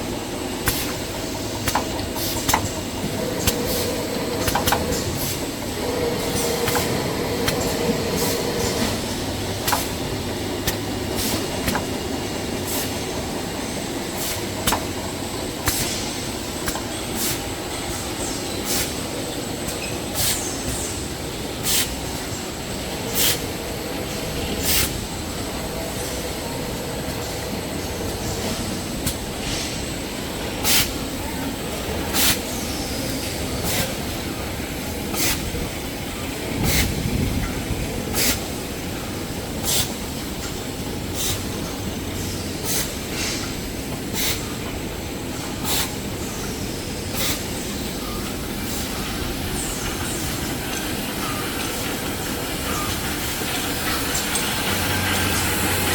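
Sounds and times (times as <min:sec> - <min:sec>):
machine humming: 0:00.0 - 0:15.6.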